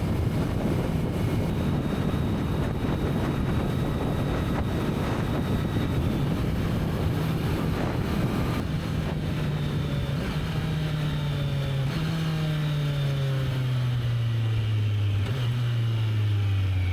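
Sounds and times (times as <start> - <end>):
wind noise on microphone: 0.0 - 12.6.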